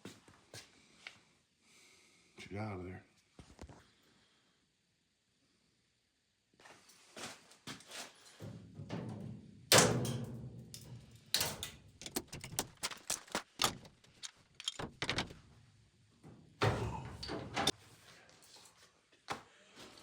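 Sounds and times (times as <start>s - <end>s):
heavy ringing thuds: 8.4s - 12.1s
sharp knocks and clicks: 8.8s - 15.4s.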